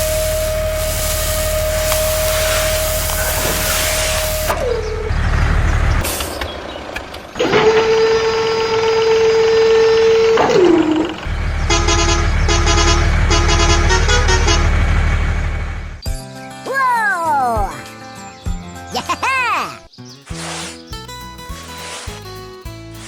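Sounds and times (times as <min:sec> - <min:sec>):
engine running: 0:00.0 - 0:16.0
long vehicle horn blast: 0:11.5 - 0:15.1
short horn toots: 0:11.6 - 0:14.9.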